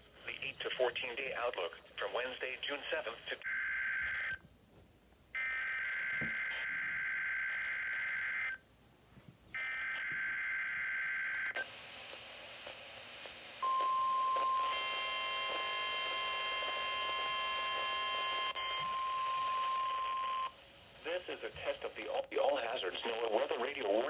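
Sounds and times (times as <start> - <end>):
radio hiss: 0.0 - 3.4, 19.4 - 24.0
steady warning alarm tone: 5.4 - 8.6, 13.6 - 20.6.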